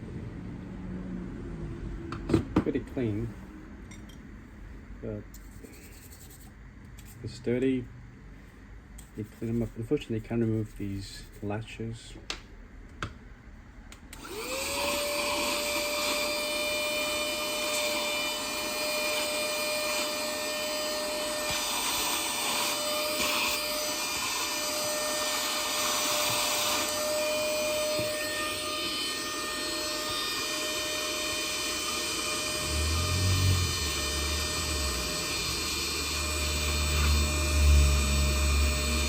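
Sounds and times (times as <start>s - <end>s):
electric cleaning tool motor whining: 14.1s - 39.0s.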